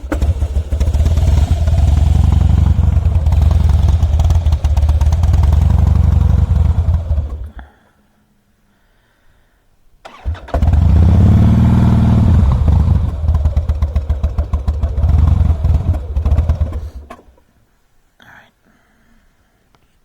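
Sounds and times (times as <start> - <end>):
motorcycle engine running unevenly: 0.0 - 7.5, 10.6 - 17.2.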